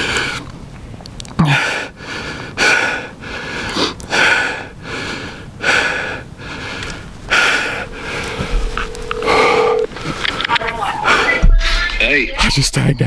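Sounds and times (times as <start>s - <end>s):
man breathing hard: 1.5s - 9.6s.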